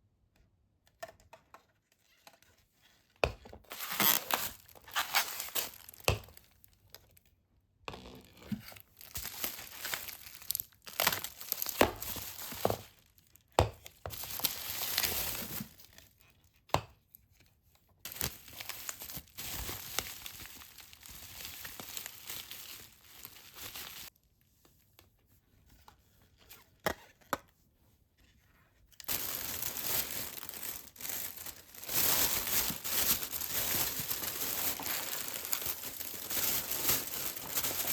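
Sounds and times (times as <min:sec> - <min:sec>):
packaging crinkling and rustling: 0:03.6 - 0:07.2, 0:08.5 - 0:16.2, 0:18.1 - 0:24.2, 0:28.9 - 0:37.9.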